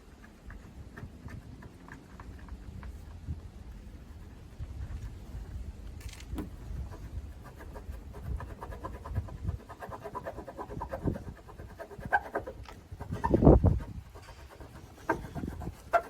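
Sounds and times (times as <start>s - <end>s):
cloth rubbing on painted panel: 6.4s - 16.0s.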